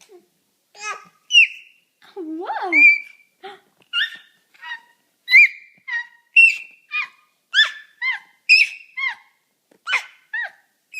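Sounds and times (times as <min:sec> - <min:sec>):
dog whining: 0:03.9 - 0:09.3, 0:09.9 - 0:10.7.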